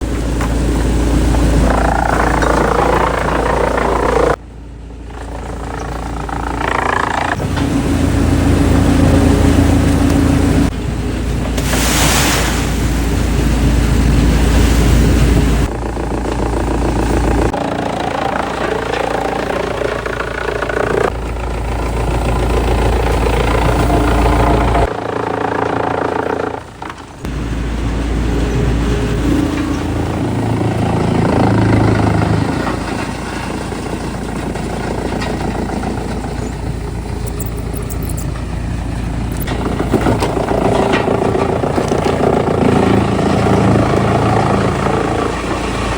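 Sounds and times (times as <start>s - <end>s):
heavy machinery running: 0.0s - 45.9s.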